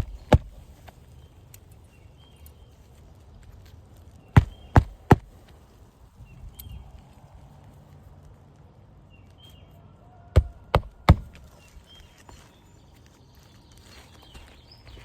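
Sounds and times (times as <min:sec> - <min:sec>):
hammer blows driving nail: 0:04.4 - 0:05.3, 0:10.4 - 0:11.4.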